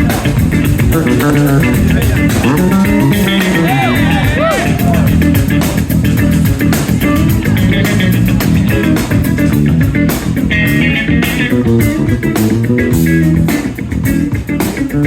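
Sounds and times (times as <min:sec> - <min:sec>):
drum hits: 0:00.0 - 0:10.4
high guitar notes: 0:00.0 - 0:15.0
rock band playing: 0:00.0 - 0:15.0.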